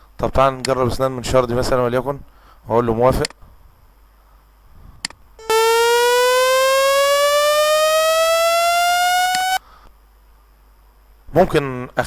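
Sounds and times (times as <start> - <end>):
rising buzzy sawtooth tone: 5.4 - 9.6.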